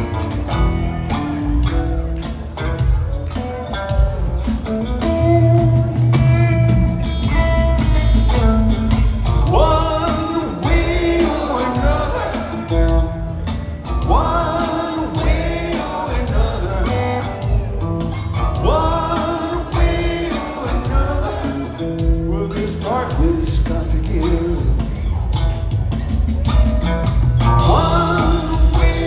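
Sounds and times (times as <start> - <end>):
live rock band: 0.0 - 29.0
man singing lead vocal: 9.4 - 25.5, 27.6 - 29.0.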